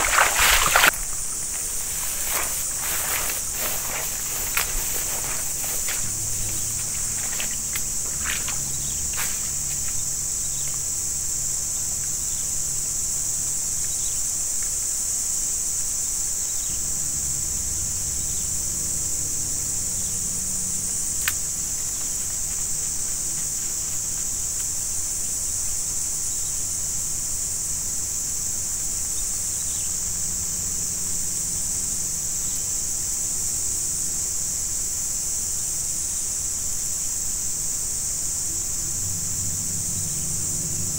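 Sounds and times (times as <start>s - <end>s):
insects chirring: 0.0s - 40.9s.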